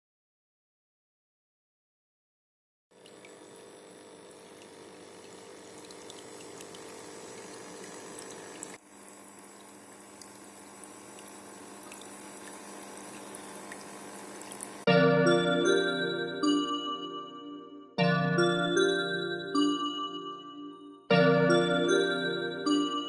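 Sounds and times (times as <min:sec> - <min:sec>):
small waterfall trickling and splashing: 0:05.7 - 0:14.9.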